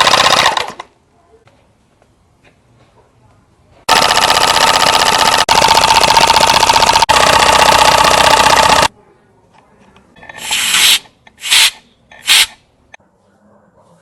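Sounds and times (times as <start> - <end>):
air compressor rattling: 0.0 - 0.8, 3.9 - 8.9
short air hisses: 10.4 - 12.6.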